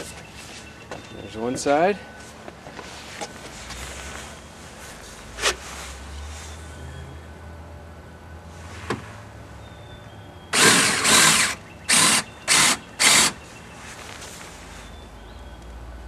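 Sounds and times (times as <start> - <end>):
power drill boring into wood: 10.5 - 13.4.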